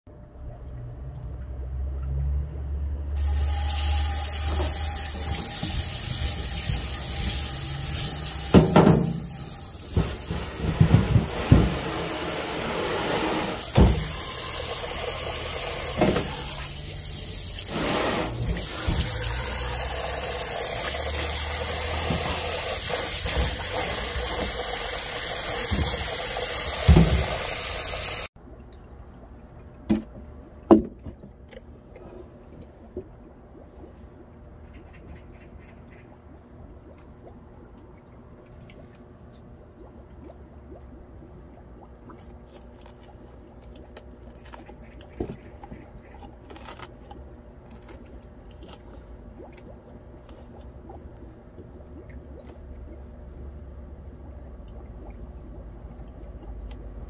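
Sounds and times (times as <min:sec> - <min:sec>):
water rushing: 0:03.2 - 0:28.3
knocks and bumps: 0:09.9 - 0:12.1.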